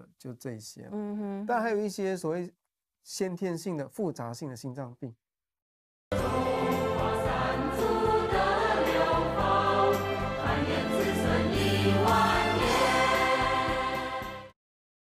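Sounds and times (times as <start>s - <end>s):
choir singing with music: 6.1s - 14.6s.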